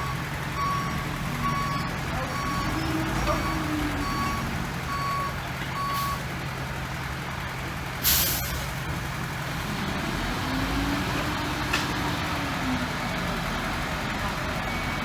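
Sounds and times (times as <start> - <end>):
reversing alarm beeps: 0.0 - 6.2, 14.6 - 15.0
diesel truck engine running: 0.0 - 15.0.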